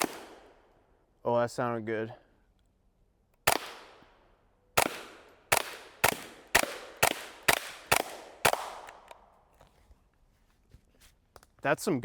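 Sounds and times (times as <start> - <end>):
suppressed rifle shots: 0.0 - 0.5, 3.4 - 4.0, 4.8 - 9.2.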